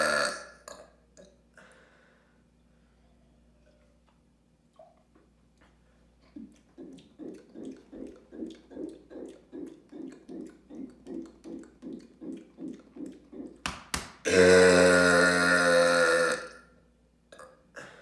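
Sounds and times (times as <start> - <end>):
loud burp: 0.0 - 0.9, 14.3 - 16.7
person gulping: 0.0 - 1.5, 3.2 - 13.6, 14.2 - 16.6, 17.3 - 18.0.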